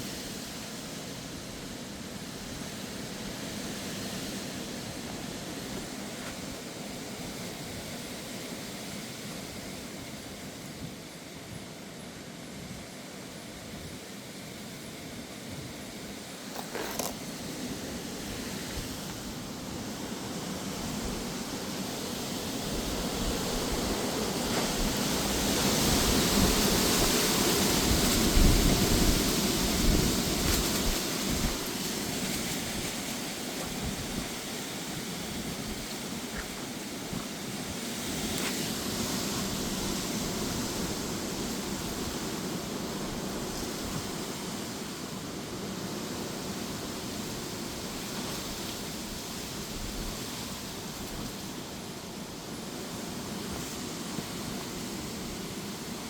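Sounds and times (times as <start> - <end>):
strong gusty wind: 15.4 - 56.0
wind buffeting microphone: 22.6 - 44.3.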